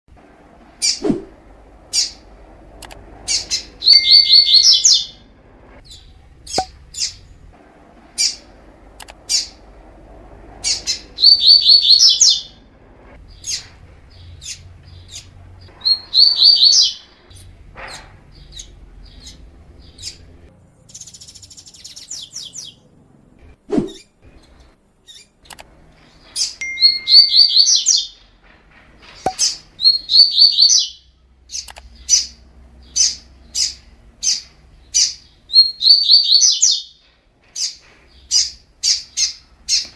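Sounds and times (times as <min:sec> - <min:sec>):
bird singing high-pitched song: 0:03.3 - 0:05.2, 0:05.8 - 0:07.4, 0:10.6 - 0:12.6, 0:13.3 - 0:17.5, 0:18.3 - 0:20.3, 0:20.9 - 0:22.8, 0:23.9 - 0:25.4, 0:26.4 - 0:28.2, 0:29.2 - 0:37.0
bird short chirps: 0:26.4 - 0:28.2.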